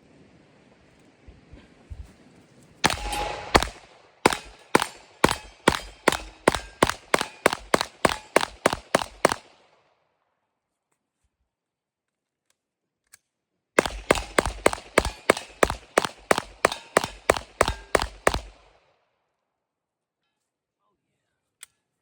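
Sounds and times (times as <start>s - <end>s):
pistol shots: 2.8s - 9.7s, 13.8s - 18.8s.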